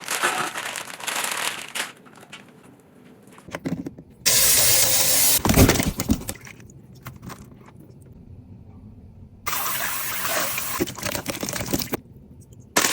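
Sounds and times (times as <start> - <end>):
rustling: 0.0 - 3.5.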